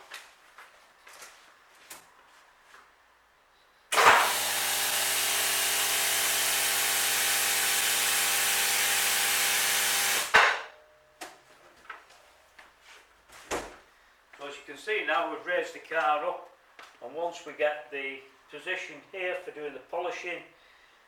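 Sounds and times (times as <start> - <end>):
vehicle lift electric motor: 3.9 - 10.7.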